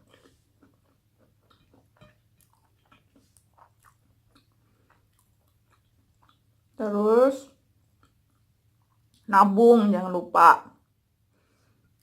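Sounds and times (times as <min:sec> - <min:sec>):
person chewing food: 0:00.0 - 0:06.8, 0:07.6 - 0:09.3.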